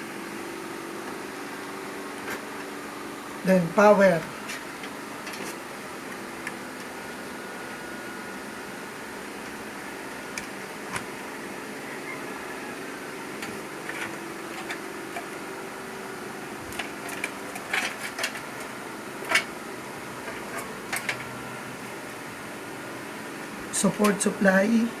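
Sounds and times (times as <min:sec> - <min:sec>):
steady background hum: 0:00.0 - 0:25.0
cables and plastic connectors clicking: 0:16.7 - 0:18.4.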